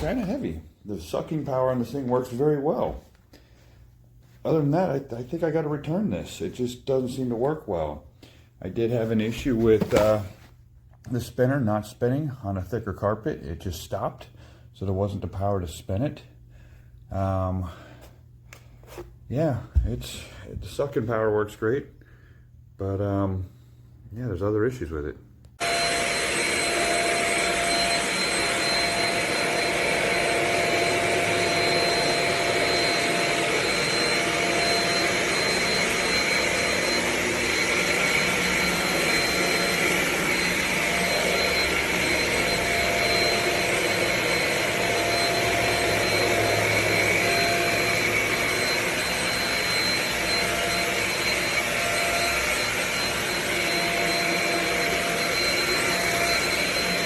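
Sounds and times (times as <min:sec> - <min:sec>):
stick vacuum running: 0:00.0 - 0:03.5, 0:25.6 - 0:57.0.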